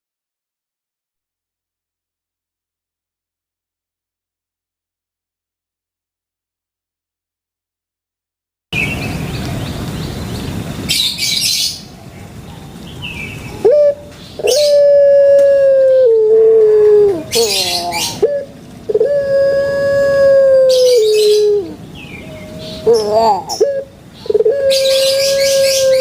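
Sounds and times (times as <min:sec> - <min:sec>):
dove song: 0:08.8 - 0:26.0.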